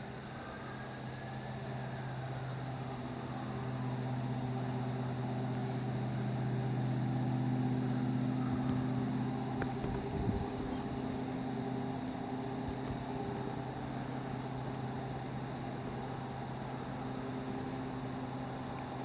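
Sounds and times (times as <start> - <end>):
low droning hum: 0.0 - 19.0.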